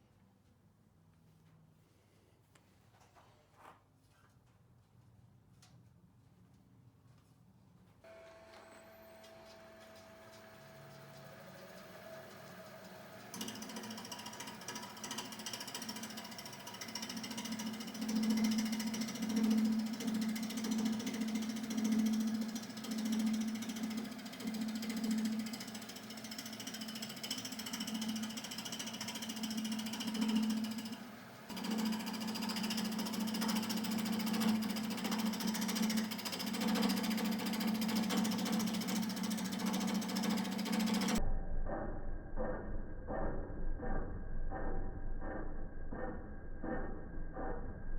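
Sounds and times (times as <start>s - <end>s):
wood lathe motor humming: 8.1s - 41.2s.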